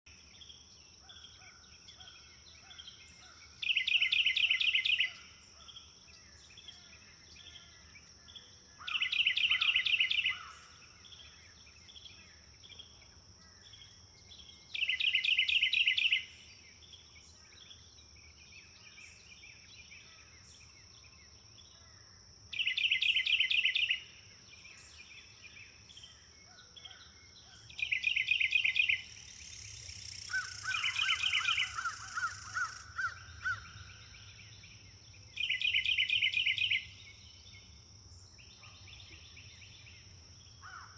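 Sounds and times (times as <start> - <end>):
soft bird chirps: 0.2 - 21.9, 22.5 - 40.9
high insect whine: 27.8 - 38.5.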